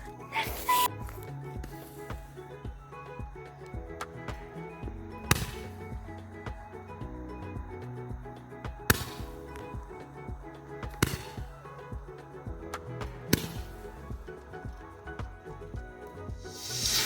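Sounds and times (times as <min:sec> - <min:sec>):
background music: 0:00.0 - 0:17.0
firework cracks: 0:16.5 - 0:17.0.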